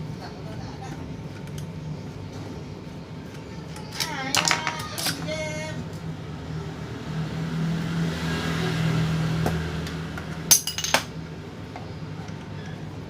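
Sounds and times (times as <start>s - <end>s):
small metal parts clinking: 10.5s - 11.1s.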